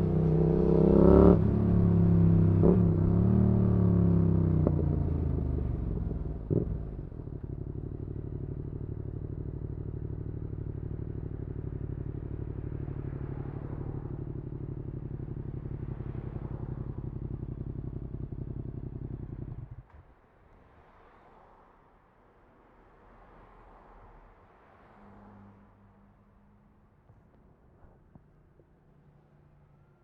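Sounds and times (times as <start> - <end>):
motorcycle engine idling: 0.0 - 19.8.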